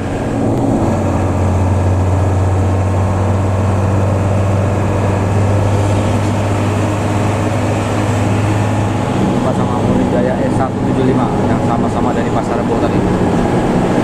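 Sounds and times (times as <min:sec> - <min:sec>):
bus engine drone: 0:00.0 - 0:14.0
road noise: 0:00.0 - 0:14.0.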